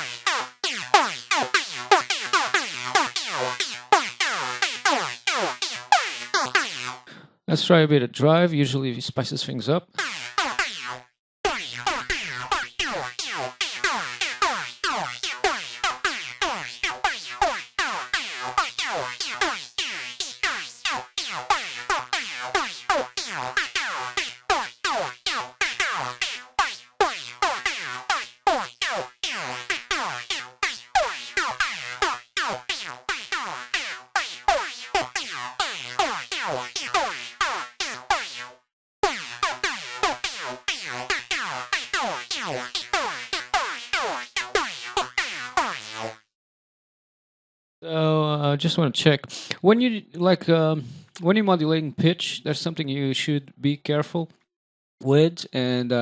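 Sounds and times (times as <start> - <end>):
synth lead playing fast melody: 0.0 - 7.1, 10.0 - 46.2.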